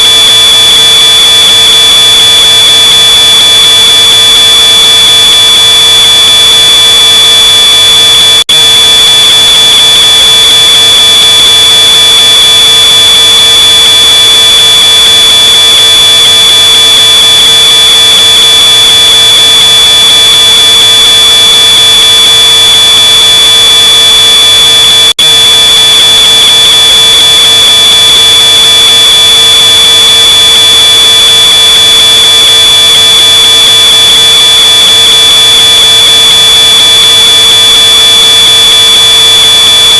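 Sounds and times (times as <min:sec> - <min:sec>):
distorted smoke alarm tone: 0:00.0 - 0:39.9.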